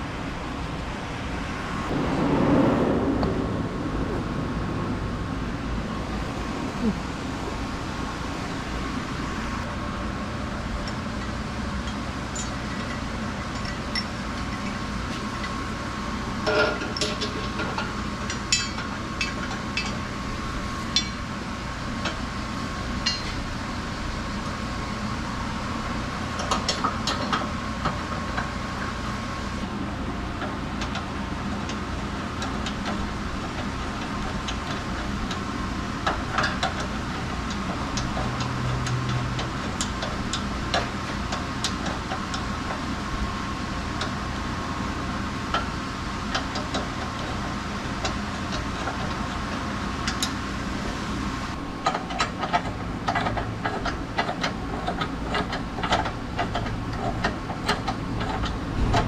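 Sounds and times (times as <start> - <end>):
background hum: 0.0 - 27.5.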